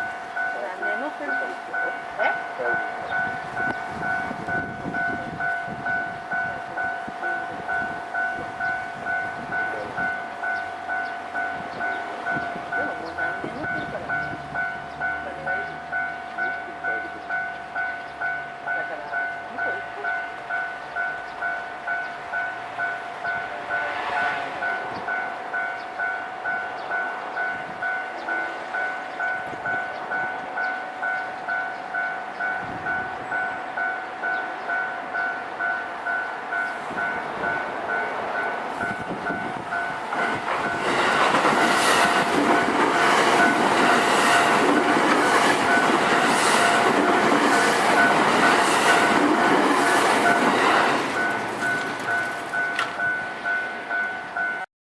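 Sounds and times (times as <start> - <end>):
level crossing bell clanging: 0.0 - 24.0, 24.7 - 54.7
train wheels clattering over rail joints: 38.8 - 53.2.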